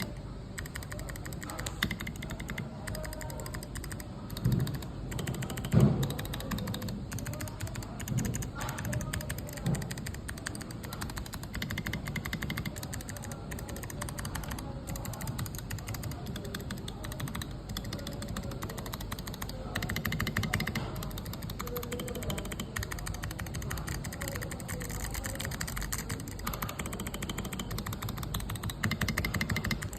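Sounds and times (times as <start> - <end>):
mechanical keyboard typing: 0.0 - 29.9.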